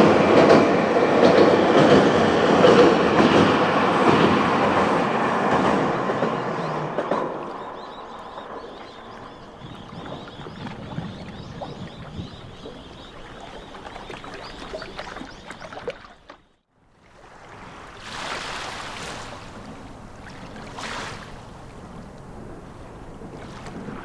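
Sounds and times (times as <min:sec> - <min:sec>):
wind buffeting microphone: 0:00.0 - 0:15.8, 0:19.4 - 0:24.0.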